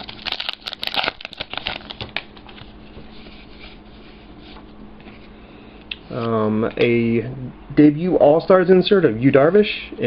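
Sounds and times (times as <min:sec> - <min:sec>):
trading cards clicking and rustling: 0:00.0 - 0:02.8.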